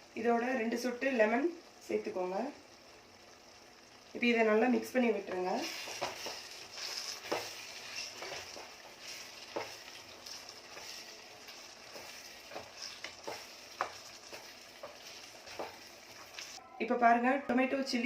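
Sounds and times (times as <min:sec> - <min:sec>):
chicken sizzling in oil: 0:00.0 - 0:16.6
utensil scraping a pan: 0:05.6 - 0:16.6.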